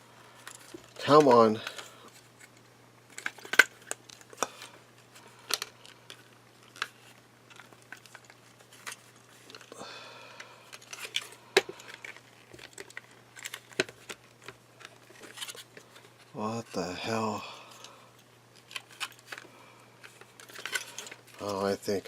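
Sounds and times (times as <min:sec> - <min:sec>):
packaging crinkling: 0:10.7 - 0:16.2.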